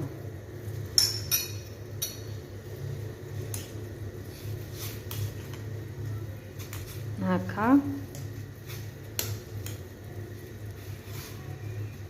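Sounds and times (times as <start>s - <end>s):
steady low hum: 0.0s - 12.0s
utensils clinking on metal saucepan: 0.9s - 2.4s.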